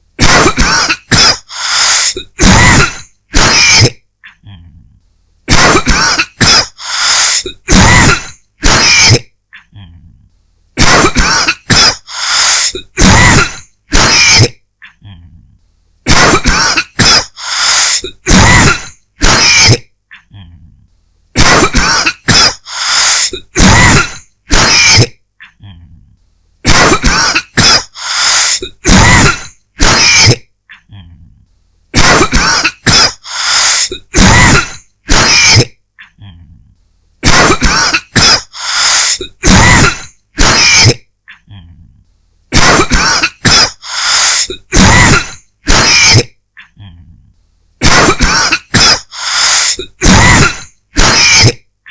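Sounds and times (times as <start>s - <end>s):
person coughing dryly: 0.2s - 4.0s, 5.5s - 9.3s, 10.8s - 14.6s, 16.1s - 19.9s, 21.4s - 25.2s, 26.7s - 30.5s, 32.0s - 35.8s, 37.2s - 41.1s, 42.5s - 46.4s, 47.8s - 51.9s.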